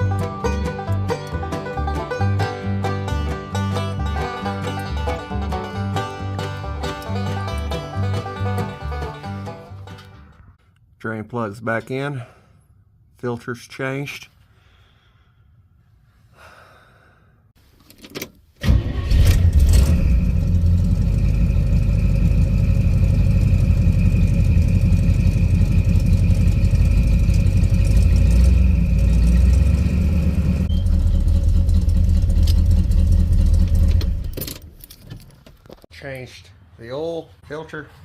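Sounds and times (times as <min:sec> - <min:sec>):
car engine running: 0:19.1 - 0:34.5.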